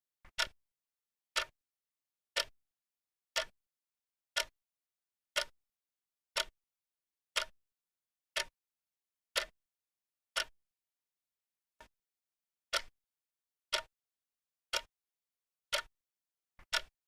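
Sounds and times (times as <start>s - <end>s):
clock-like timer ticks: 0.3s - 0.6s, 1.4s - 1.6s, 3.3s - 3.6s, 4.4s - 4.6s, 5.3s - 5.6s, 6.4s - 6.6s, 7.4s - 7.6s, 8.4s - 8.6s, 9.4s - 9.6s, 10.4s - 10.6s, 12.7s - 12.9s, 13.7s - 13.9s, 14.7s - 14.9s, 15.7s - 15.9s, 16.6s - 16.9s.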